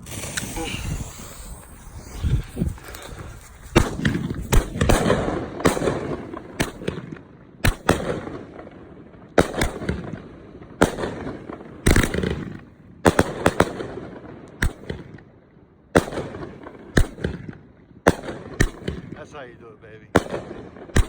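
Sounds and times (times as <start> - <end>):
rushing crackling noise: 0.0 - 5.0
firework shots and bursts: 0.0 - 15.3, 15.9 - 21.0.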